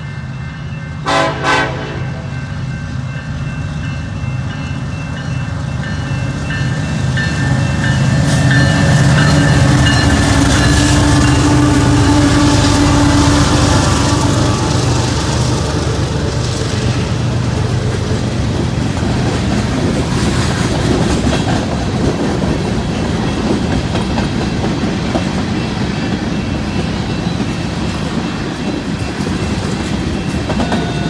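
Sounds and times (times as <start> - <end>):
train cars rolling past: 0.0 - 31.0
wheel squealing on rail: 4.9 - 31.0
wheels clattering over rail joints: 13.0 - 31.0.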